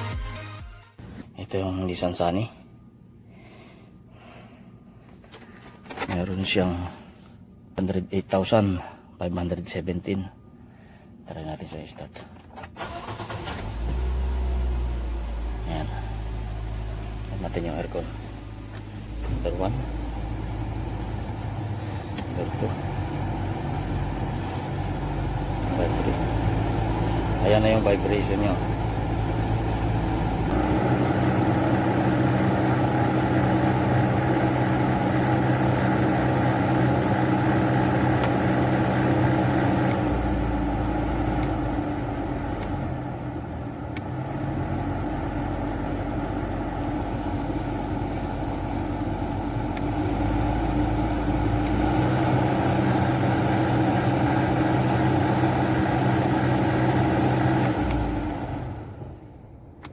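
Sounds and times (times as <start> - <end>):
blower motor droning: 12.8 - 59.2
car engine idling: 12.8 - 59.8.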